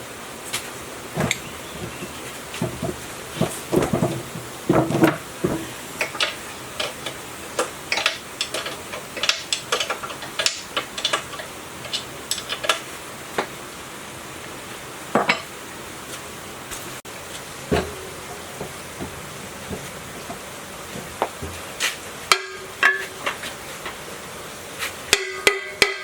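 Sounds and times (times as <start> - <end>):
steady low hiss: 0.0 - 26.0
hard objects clinking and tapping: 1.2 - 12.8.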